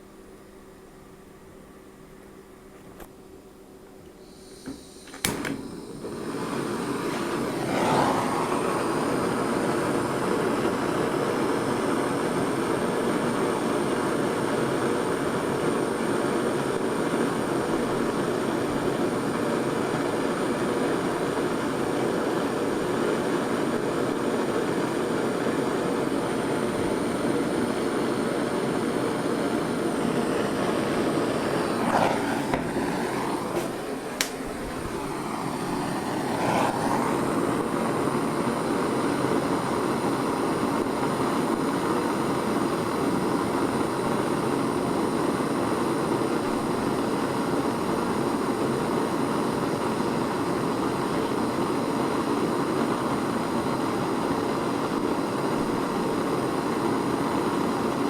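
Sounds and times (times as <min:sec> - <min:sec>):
blowtorch ignition click: 0:03.9 - 0:10.8, 0:29.6 - 0:39.3
blowtorch flame hissing: 0:04.0 - 0:58.0.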